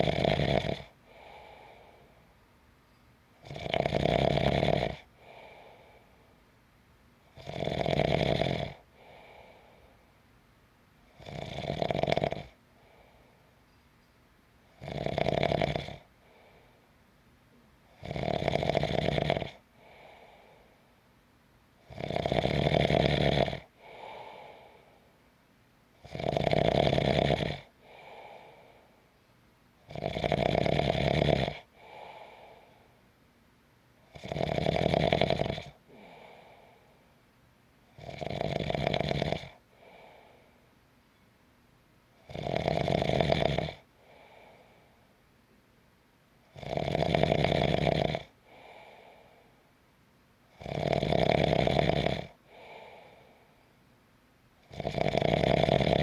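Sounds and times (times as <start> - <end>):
person snoring: 0.0 - 2.0, 3.4 - 6.0, 7.4 - 9.7, 11.2 - 12.6, 14.8 - 16.1, 18.0 - 20.5, 21.9 - 24.8, 26.0 - 28.8, 29.9 - 32.8, 34.1 - 36.9, 38.0 - 40.4, 42.3 - 44.7, 46.6 - 49.3, 50.6 - 53.3, 54.7 - 56.0.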